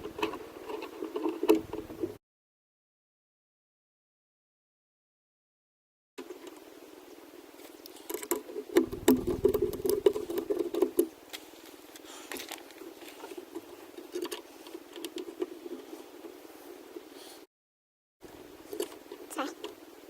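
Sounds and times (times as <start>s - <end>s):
parts and tools clicking and rattling: 0.0s - 2.2s, 7.9s - 15.8s, 18.6s - 19.8s
louder knocks and rumble: 8.8s - 10.4s.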